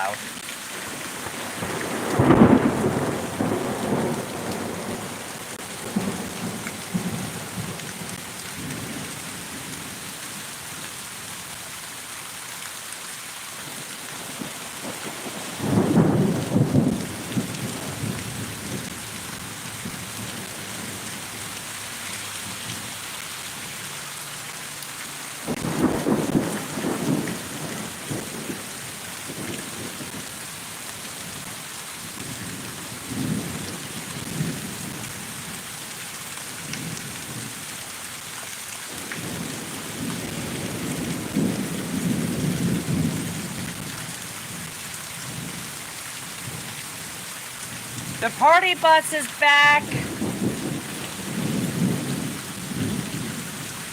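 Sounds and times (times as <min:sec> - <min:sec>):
thunder rumbling: 0:00.0 - 0:09.0, 0:14.4 - 0:19.1, 0:25.5 - 0:28.7, 0:38.9 - 0:43.8, 0:49.8 - 0:53.9
steady rain: 0:00.0 - 0:53.9.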